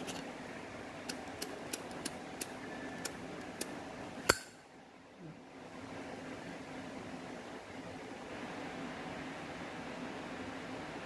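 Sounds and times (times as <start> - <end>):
light metallic lighter clicks: 4.3 - 4.6.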